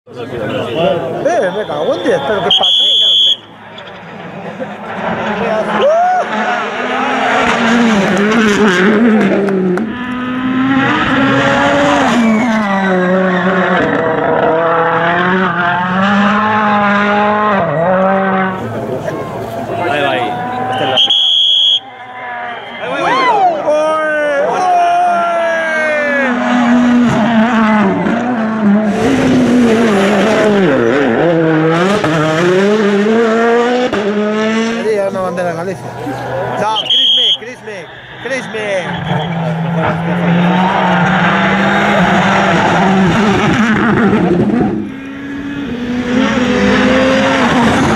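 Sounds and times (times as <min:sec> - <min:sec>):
rally car engine revving hard: 0:04.2 - 0:21.1, 0:25.4 - 0:36.5, 0:37.8 - 0:47.9.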